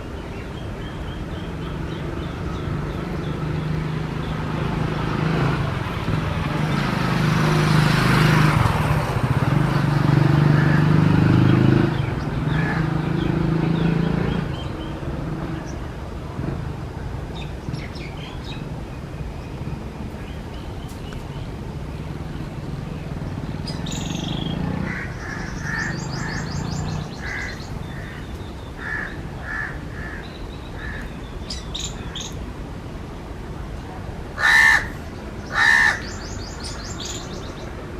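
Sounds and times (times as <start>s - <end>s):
outdoor background noise: 0.0s - 37.9s
passing vehicle engine: 1.5s - 17.4s, 21.4s - 30.0s
small birds chirping: 17.3s - 32.5s, 34.4s - 37.9s
crows cawing: 24.8s - 26.6s, 27.2s - 28.2s, 28.8s - 31.1s, 34.4s - 36.3s.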